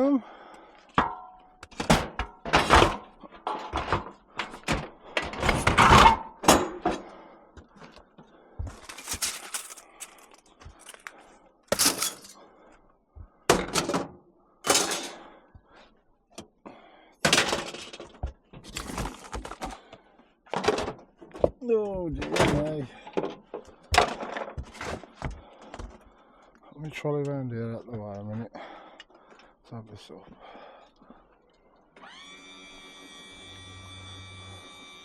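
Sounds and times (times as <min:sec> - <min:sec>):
scrap metal clanking and crashing: 0:01.0 - 0:07.0, 0:08.7 - 0:11.1, 0:11.7 - 0:12.4, 0:14.7 - 0:15.2.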